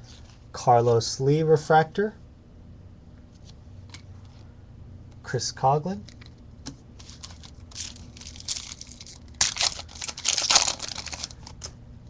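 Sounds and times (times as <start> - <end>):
card pack wrapper tearing and crinkling: 7.0 - 11.8.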